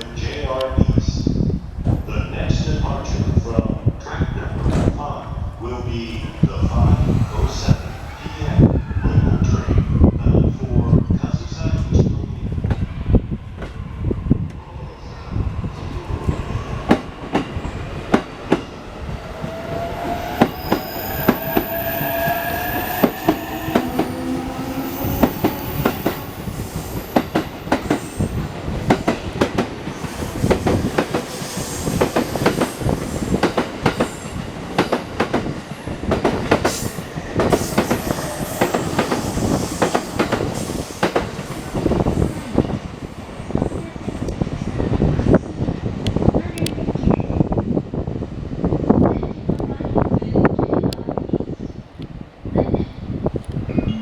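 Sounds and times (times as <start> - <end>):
high wheel squeal: 19.5 - 27.3.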